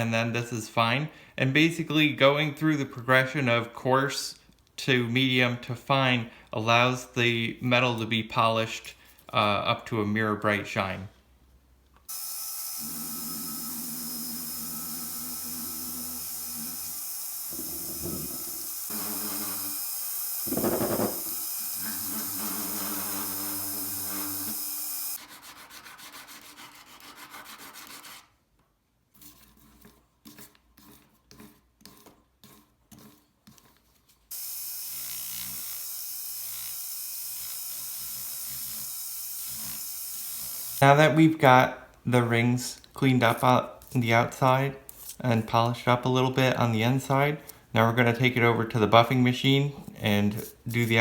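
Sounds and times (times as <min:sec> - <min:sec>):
rubbing and sanding metal: 0:25.2 - 0:28.3.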